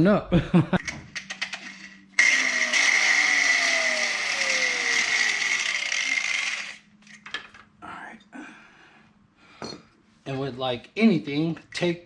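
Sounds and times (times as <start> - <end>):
grinder cutting metal: 1.6 - 6.8.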